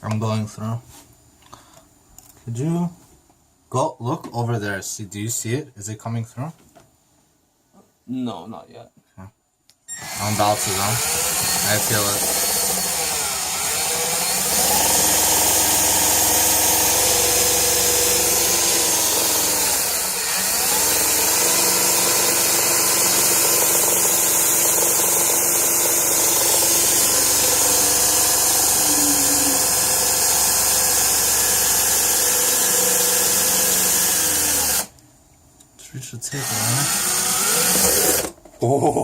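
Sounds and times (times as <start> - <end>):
electric drill boring through wood: 9.9 - 34.9, 36.3 - 38.4.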